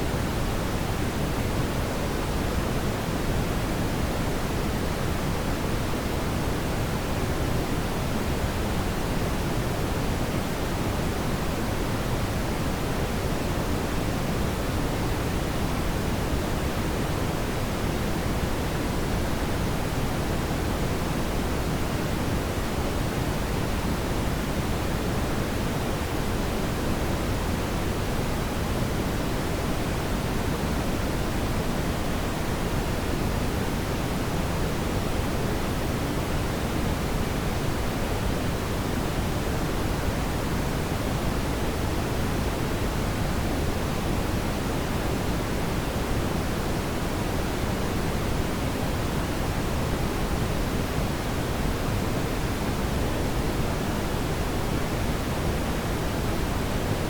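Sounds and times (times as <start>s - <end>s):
brown noise hiss: 0.0s - 57.0s.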